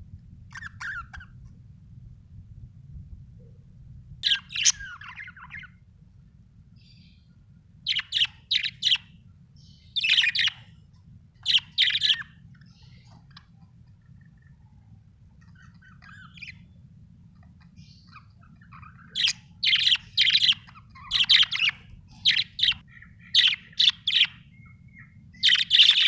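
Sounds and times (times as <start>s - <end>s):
steady low hum: 0.0s - 26.0s
budgerigar chirping: 0.5s - 1.4s, 4.2s - 5.7s, 7.9s - 10.7s, 11.4s - 13.4s, 15.4s - 16.8s, 17.6s - 26.0s.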